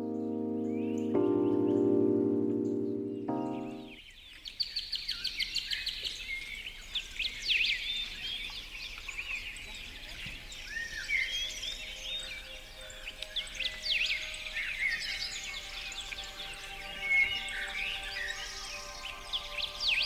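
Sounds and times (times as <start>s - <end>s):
songbirds chorus: 0.0s - 20.0s.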